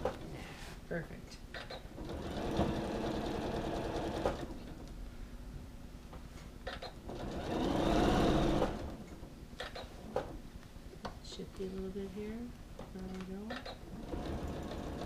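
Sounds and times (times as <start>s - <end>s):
sewing machine stitching: 2.0s - 4.6s, 7.1s - 9.0s, 13.9s - 15.0s.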